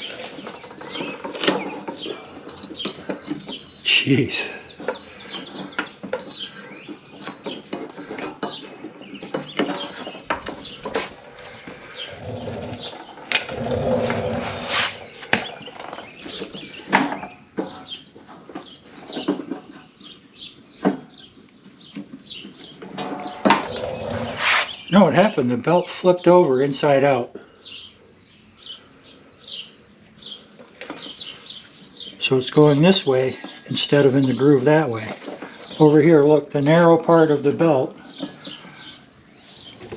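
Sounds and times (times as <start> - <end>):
metal clinks and knocks of tools: 0.0 - 13.5
belt rubbing and scraping: 0.0 - 16.9, 22.9 - 25.0.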